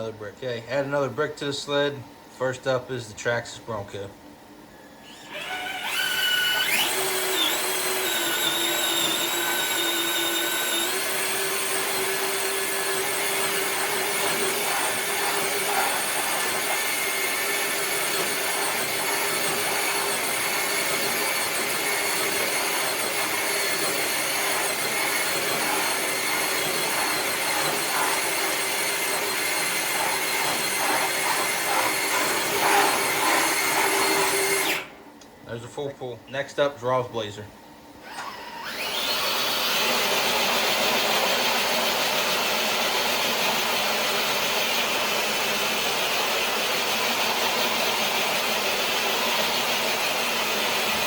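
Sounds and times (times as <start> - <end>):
electric motor whining: 5.0 - 34.9, 38.0 - 39.8.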